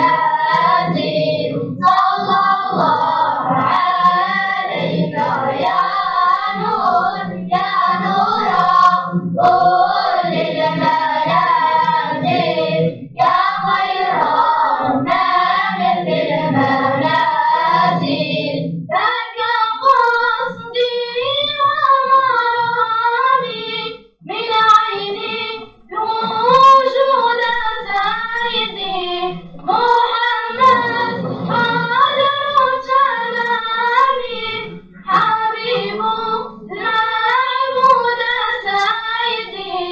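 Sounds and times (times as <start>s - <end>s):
children singing a chant: 0.0s - 39.9s.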